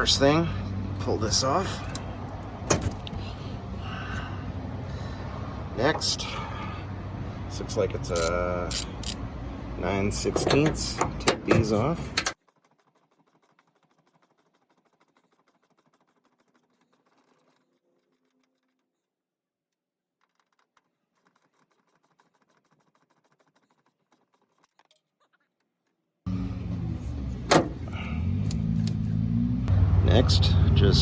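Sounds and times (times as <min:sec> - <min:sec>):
vehicle engine: 0:00.0 - 0:12.4, 0:26.3 - 0:31.0
wrench clicking: 0:08.2 - 0:09.2.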